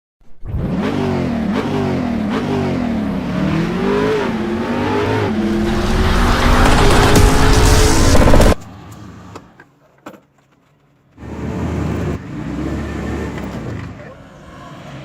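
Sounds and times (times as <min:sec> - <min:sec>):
car engine revving: 0:00.4 - 0:08.8.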